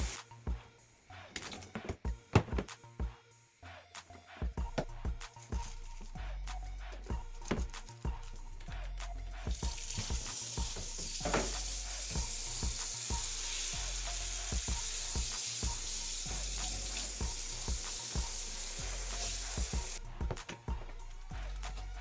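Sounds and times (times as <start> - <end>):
shower water spraying: 0.0 - 0.2, 9.4 - 20.0
background music with bass beat: 0.0 - 22.0.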